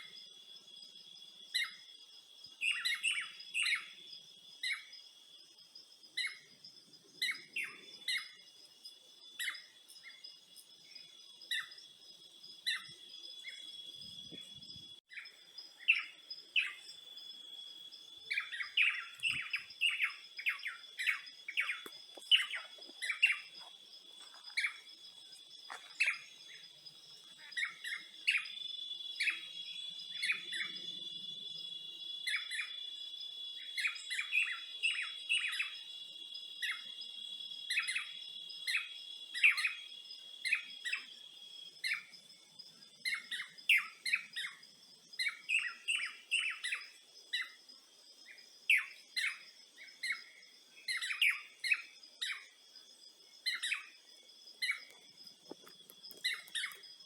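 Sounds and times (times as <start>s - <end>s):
high-pitched insect trills: 0.0s - 57.0s
birds chirping: 6.1s - 42.1s, 42.9s - 47.6s, 53.4s - 57.0s.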